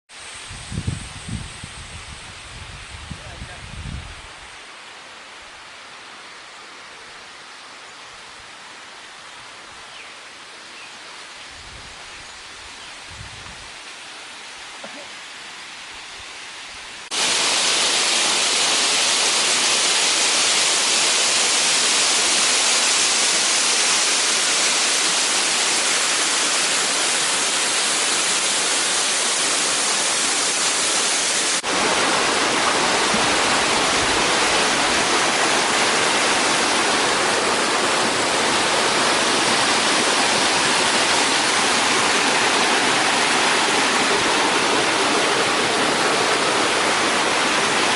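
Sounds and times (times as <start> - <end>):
waterfall rushing: 17.0 - 47.9.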